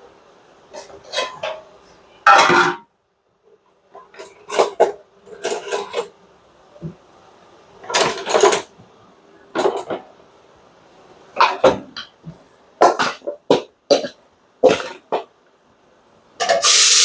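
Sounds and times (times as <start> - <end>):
clatter of pots and dishes: 0.7 - 2.9, 3.9 - 6.2, 7.8 - 8.8, 9.5 - 10.2, 11.4 - 15.3, 16.4 - 16.9.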